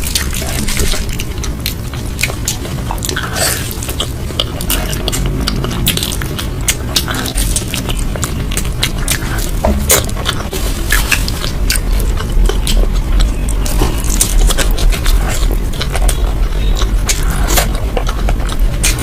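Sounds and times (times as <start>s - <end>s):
chewing and biting food: 0.0s - 19.0s.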